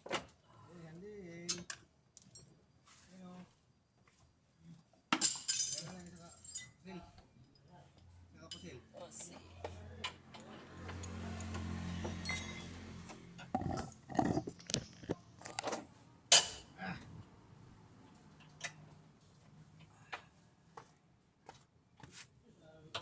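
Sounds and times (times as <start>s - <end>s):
metal tools clinking and clanking: 5.2s - 6.8s, 10.4s - 12.8s.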